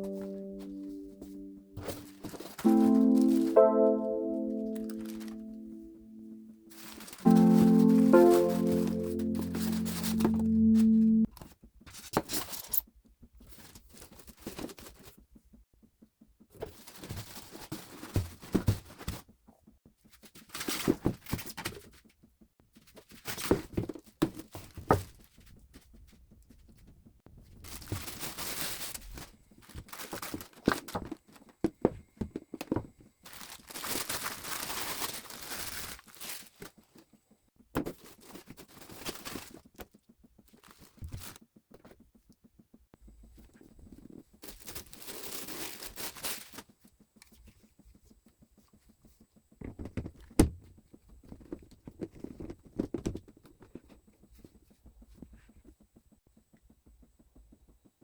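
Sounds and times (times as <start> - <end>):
plastic and paper crinkling: 4.8 - 10.4, 27.5 - 31.5, 33.2 - 37.0, 37.9 - 39.9, 44.4 - 46.7.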